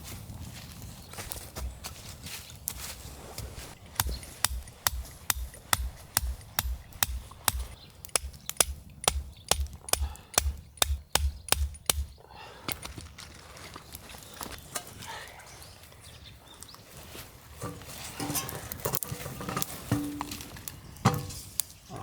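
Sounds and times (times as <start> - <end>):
sharp knocks with dull thuds: 3.6 - 12.2.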